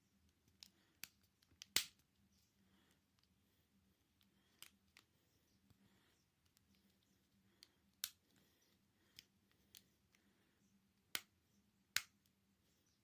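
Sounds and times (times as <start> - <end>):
small parts clicking: 4.1 - 5.1.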